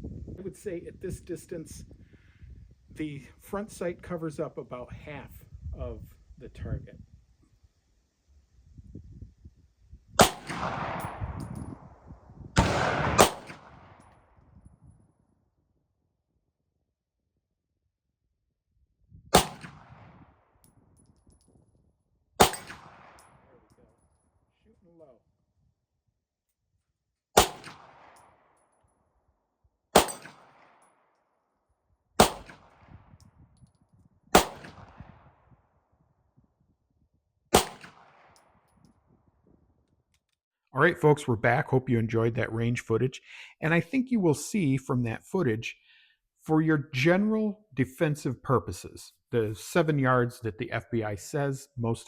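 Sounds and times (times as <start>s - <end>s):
pistol shots with echo: 10.2s - 11.4s, 12.6s - 14.0s, 19.3s - 20.1s, 22.4s - 23.6s, 27.4s - 28.2s, 30.0s - 30.8s, 32.2s - 32.9s, 34.3s - 35.1s, 37.5s - 38.4s.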